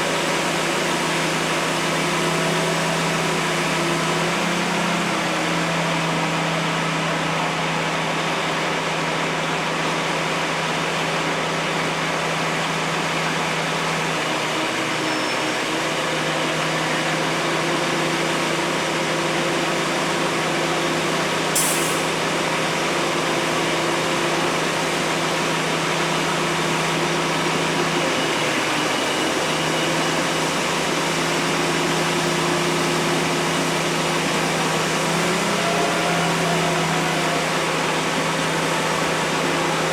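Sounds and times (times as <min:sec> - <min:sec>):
heavy engine humming: 0:00.0 - 0:39.9.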